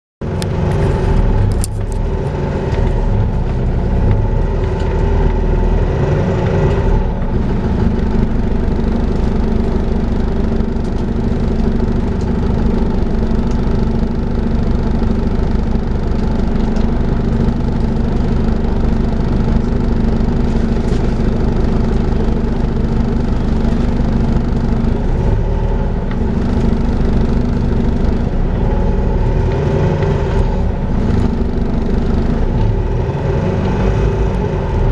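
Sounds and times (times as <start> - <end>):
bus whine: 0.2 - 34.9
low engine rumble: 0.2 - 34.9.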